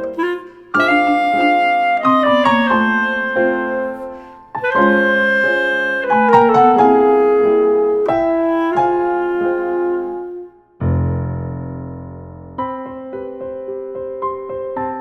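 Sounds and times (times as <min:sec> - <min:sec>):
piano background music: 0:00.0 - 0:15.0.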